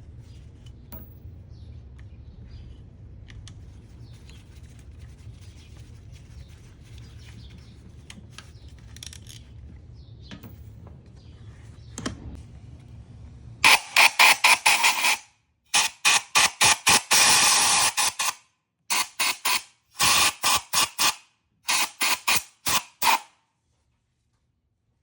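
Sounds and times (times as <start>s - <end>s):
low steady hum: 0.0s - 13.7s.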